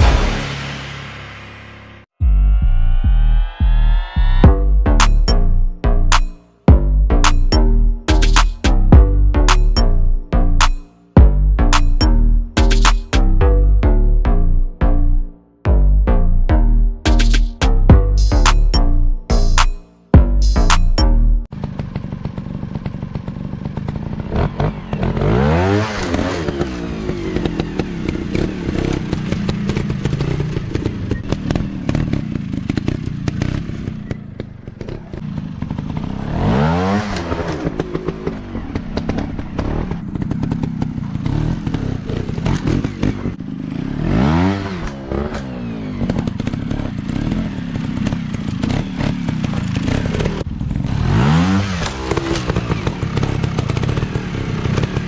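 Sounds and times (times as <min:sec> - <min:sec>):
dirt bike engines revving: 0:23.8 - 0:55.0.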